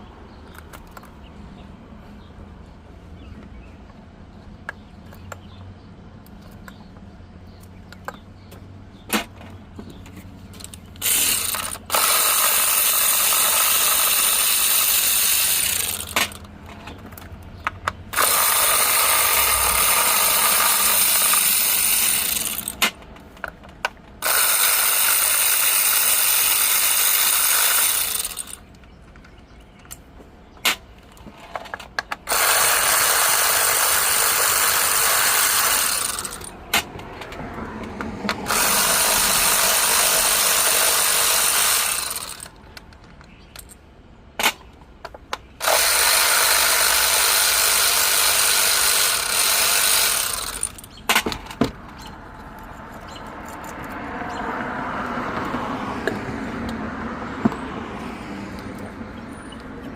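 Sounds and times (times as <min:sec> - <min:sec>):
tools clicking: 0:10.5 - 0:43.8, 0:44.4 - 0:54.4
power ratchet spinning: 0:10.6 - 0:16.5, 0:18.0 - 0:23.0, 0:24.2 - 0:28.7, 0:32.2 - 0:36.8, 0:38.4 - 0:42.6, 0:45.6 - 0:51.0.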